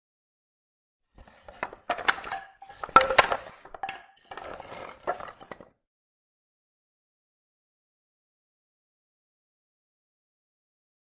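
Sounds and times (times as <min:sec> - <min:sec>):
wood creaking: 0:01.2 - 0:05.7
wooden pieces knocking and clattering: 0:01.2 - 0:05.7.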